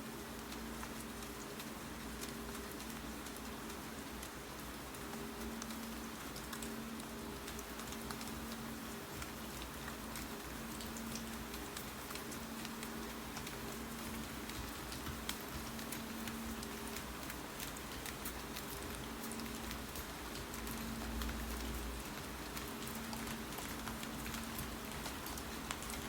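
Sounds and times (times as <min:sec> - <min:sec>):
steady rain: 0:00.0 - 0:26.0
typing on a keyboard: 0:09.2 - 0:26.0.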